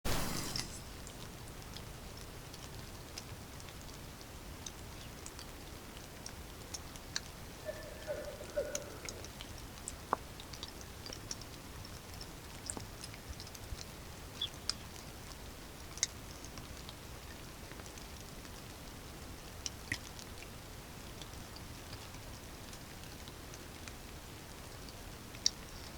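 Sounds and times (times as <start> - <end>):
steady rain: 0.1 - 25.9
water drops dripping: 4.6 - 11.6.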